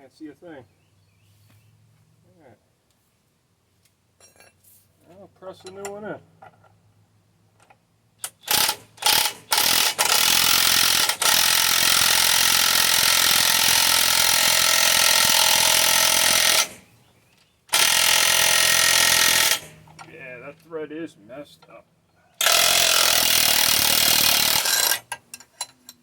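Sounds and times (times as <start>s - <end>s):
power wrench running: 8.2s - 16.9s, 17.7s - 20.0s, 22.4s - 25.2s.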